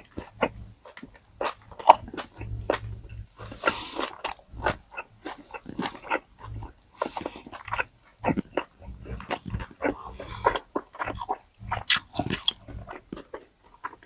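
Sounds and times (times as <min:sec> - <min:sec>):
crunching and chewing crispy food: 0:00.0 - 0:14.0.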